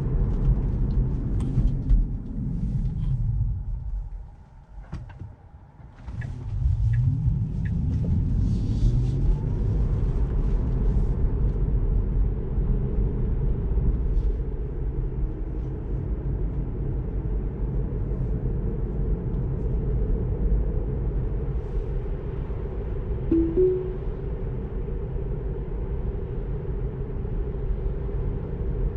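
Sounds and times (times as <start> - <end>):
road rumble: 0.0 - 16.8.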